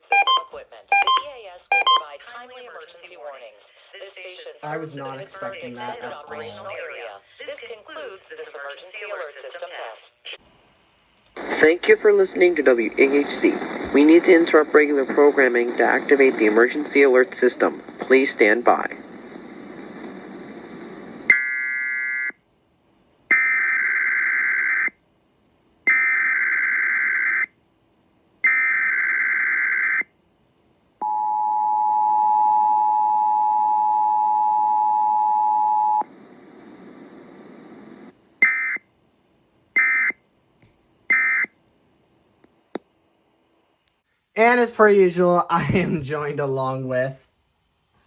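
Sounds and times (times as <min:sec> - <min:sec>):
data bursts: 0:00.0 - 0:02.0
two-tone attention signal: 0:00.0 - 0:02.0
faint radio hiss: 0:00.1 - 0:21.3, 0:36.0 - 0:38.4, 0:39.0 - 0:48.0.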